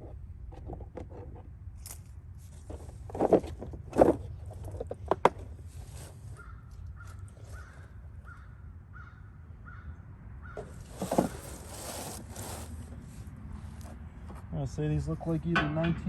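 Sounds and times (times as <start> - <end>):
bird calling: 6.3 - 11.7.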